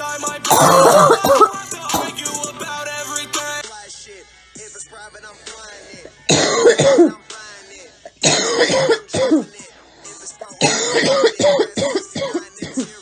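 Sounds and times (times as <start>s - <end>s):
hip hop music: 0.0s - 13.0s
woman coughing: 0.5s - 2.2s, 6.3s - 7.2s, 8.3s - 9.5s, 10.6s - 12.9s.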